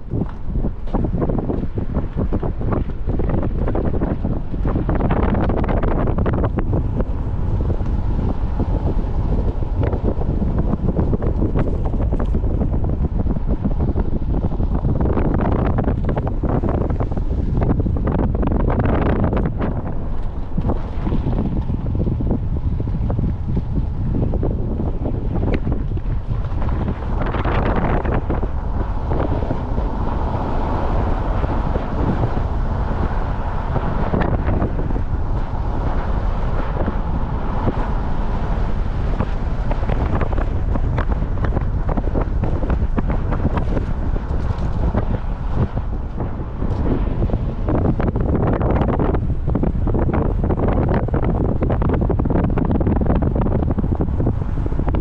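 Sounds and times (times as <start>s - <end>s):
low rumble: 0.0s - 55.0s
wind buffeting microphone: 0.0s - 55.0s.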